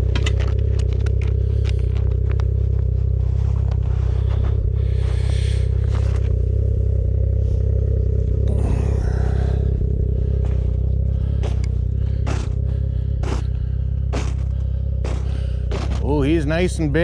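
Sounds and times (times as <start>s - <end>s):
snowmobile engine running: 0.0s - 17.0s
scraping and rustling: 10.3s - 16.4s.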